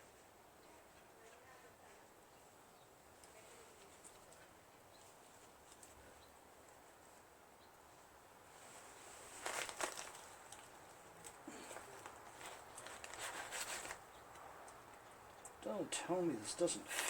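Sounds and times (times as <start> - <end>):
faint handling noise: 7.9 - 15.6.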